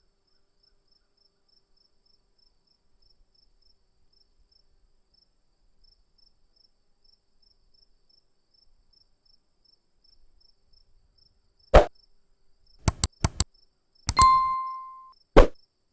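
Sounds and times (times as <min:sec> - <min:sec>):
short ringing tone: 0:14.1 - 0:15.6.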